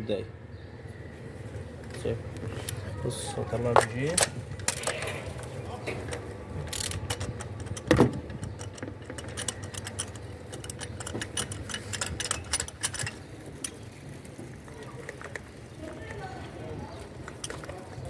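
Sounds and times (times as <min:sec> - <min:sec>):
wrench clicking and clinking: 0:03.8 - 0:05.2, 0:06.1 - 0:13.9.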